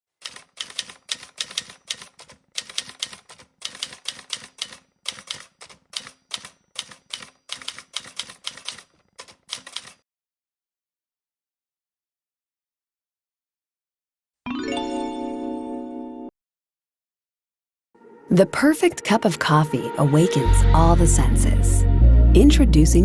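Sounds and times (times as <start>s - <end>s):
keyboard typing clatter: 0.2s - 10.0s.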